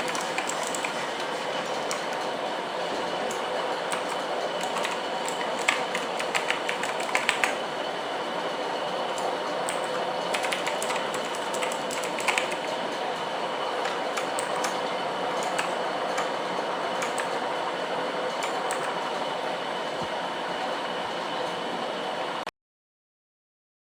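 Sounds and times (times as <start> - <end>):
mechanical keyboard clicks: 0.0 - 1.0, 3.3 - 7.6, 9.2 - 12.8, 13.8 - 14.8, 15.4 - 16.3, 17.0 - 17.4, 18.4 - 19.0
background hiss and hum: 0.0 - 22.5.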